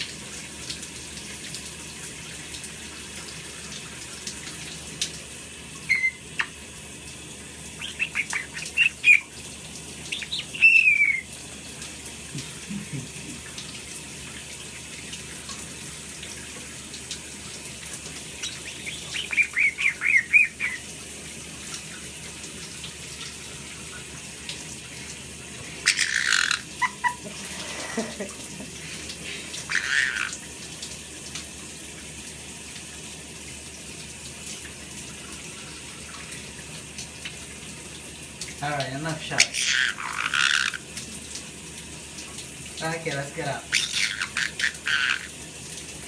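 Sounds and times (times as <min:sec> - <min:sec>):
shower water running: 0:00.0 - 0:46.0
parrot chirping: 0:05.8 - 0:06.6, 0:07.8 - 0:09.4, 0:10.1 - 0:11.3, 0:18.3 - 0:20.9, 0:25.8 - 0:27.3, 0:29.7 - 0:30.4, 0:39.4 - 0:40.8, 0:43.7 - 0:45.3.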